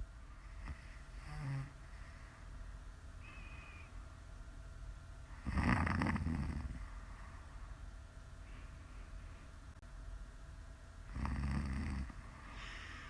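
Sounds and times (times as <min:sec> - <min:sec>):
woman snoring: 0:00.6 - 0:01.8, 0:05.4 - 0:06.8, 0:11.1 - 0:13.0.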